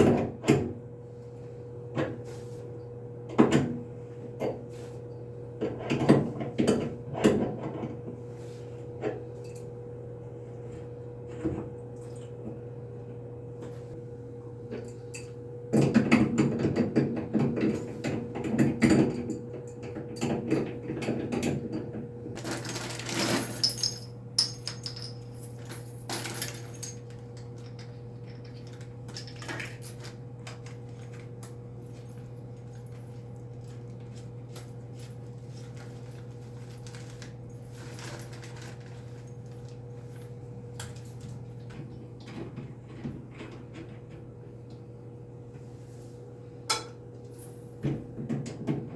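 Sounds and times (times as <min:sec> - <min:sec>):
steady electrical hum: 0:00.0 - 0:48.9
hard objects clattering: 0:22.4 - 0:31.2.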